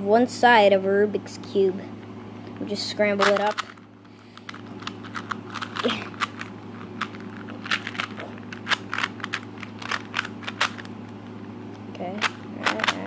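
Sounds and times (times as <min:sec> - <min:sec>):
puzzle cube clicking: 0:04.4 - 0:10.9, 0:12.2 - 0:13.0.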